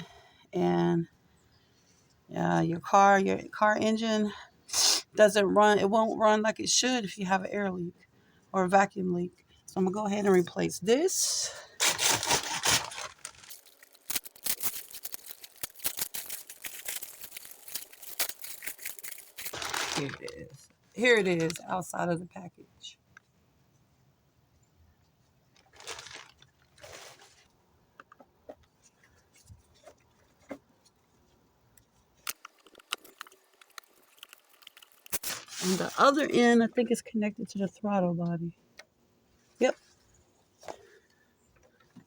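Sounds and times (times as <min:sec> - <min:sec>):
clicks and rustling of hose: 0:11.8 - 0:21.8, 0:25.5 - 0:36.5
packaging crinkling and tearing: 0:11.8 - 0:21.8, 0:25.6 - 0:27.5, 0:32.2 - 0:36.2.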